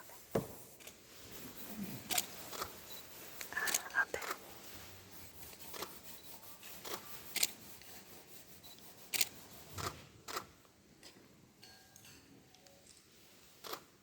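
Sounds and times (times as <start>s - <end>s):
brush scrubbing wood: 4.5s - 9.7s.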